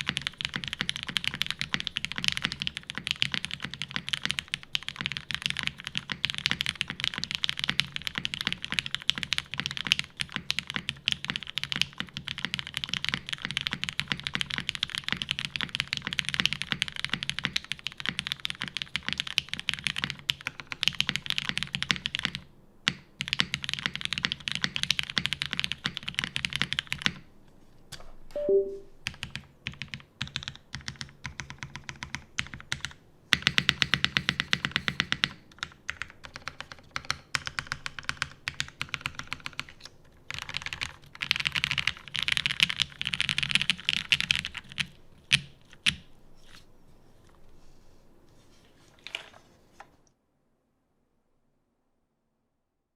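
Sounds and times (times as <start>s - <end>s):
fast mechanical keyboard typing: 0.0s - 27.2s, 29.0s - 46.1s
falling two-note blip: 28.4s - 28.9s.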